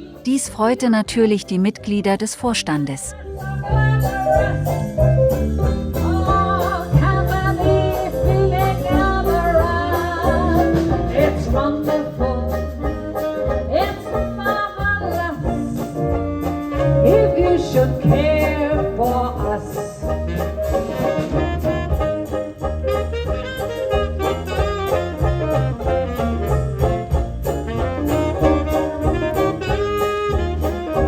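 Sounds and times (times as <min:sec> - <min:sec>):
jazz band playing: 0:00.0 - 0:31.0
person singing: 0:17.0 - 0:20.2.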